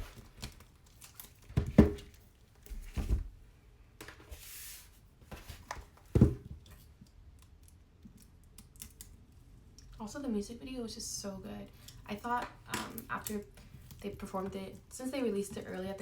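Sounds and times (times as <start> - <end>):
package knocks and bumps: 1.5 - 3.3, 5.4 - 6.6.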